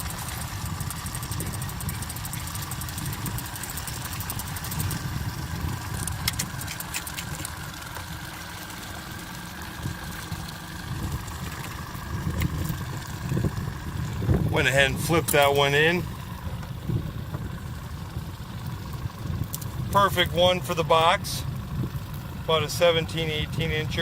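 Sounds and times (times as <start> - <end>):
boat motor rumbling: 0.0 - 24.0
sharp clicks: 6.0 - 7.6.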